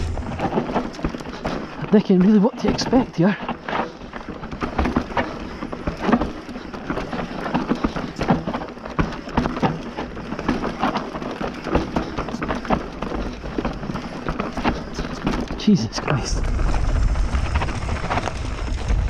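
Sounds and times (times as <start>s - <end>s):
low rumble: 0.0s - 0.8s, 16.2s - 19.0s
bike frame knocks and rattles: 0.0s - 19.0s
tyres crunching over dirt: 0.0s - 19.0s.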